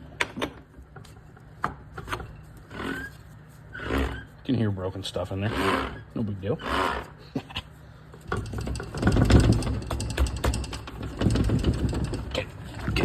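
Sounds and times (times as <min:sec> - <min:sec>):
transmission parts grinding and clattering: 0:08.2 - 0:13.0.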